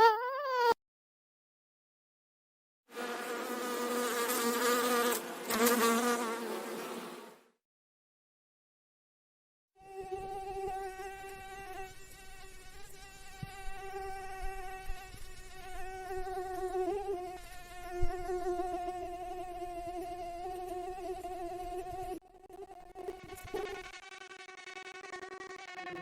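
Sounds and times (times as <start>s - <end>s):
mosquito whine: 0.0s - 0.8s, 9.8s - 26.0s.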